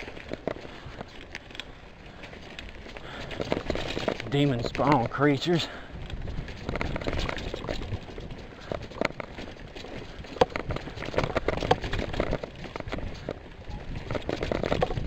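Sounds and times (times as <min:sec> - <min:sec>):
bike clicks and rattles: 0:00.0 - 0:15.0
bike tyres rumbling on dirt: 0:00.0 - 0:15.0.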